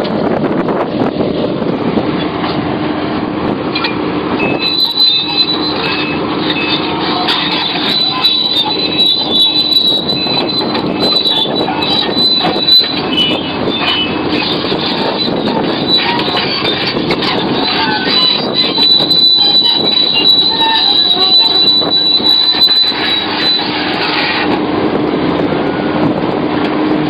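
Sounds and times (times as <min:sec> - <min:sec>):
excavator working: 0:00.0 - 0:27.0
high-pitched whine: 0:03.7 - 0:24.6.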